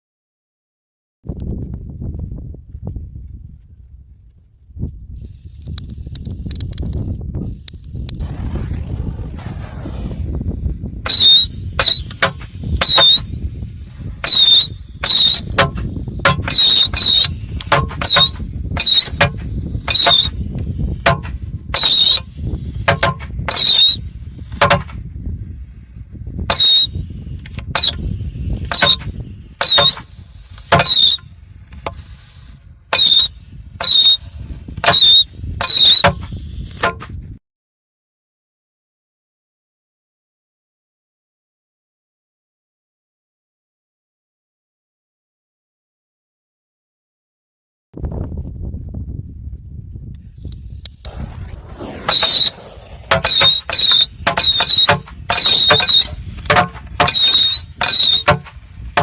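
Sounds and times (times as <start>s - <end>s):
firework shrieking whistles: 8.0s - 10.5s, 11.1s - 15.7s, 16.3s - 20.9s, 21.8s - 24.4s, 26.5s - 36.7s, 50.3s - 59.0s.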